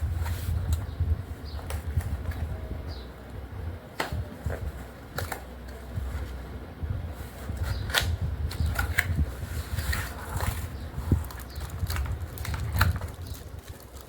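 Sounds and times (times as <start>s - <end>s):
low handling rumble: 0.0s - 14.0s
packaging rustling: 7.5s - 14.0s.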